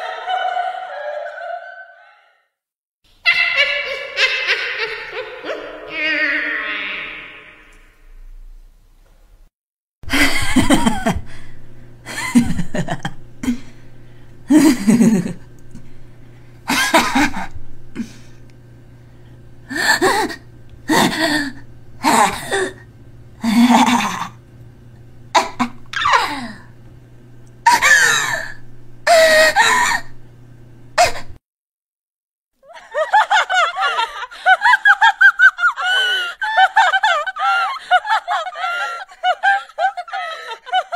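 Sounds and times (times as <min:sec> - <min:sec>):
man's evil laugh: 0:00.0 - 0:02.3, 0:03.2 - 0:07.8, 0:10.1 - 0:11.4, 0:12.1 - 0:13.7, 0:14.5 - 0:15.4, 0:16.7 - 0:17.5, 0:23.4 - 0:24.3, 0:27.7 - 0:30.0, 0:32.7 - 0:40.9
person shrieking: 0:03.2 - 0:07.9, 0:26.0 - 0:26.6
low steady hum: 0:10.1 - 0:31.4.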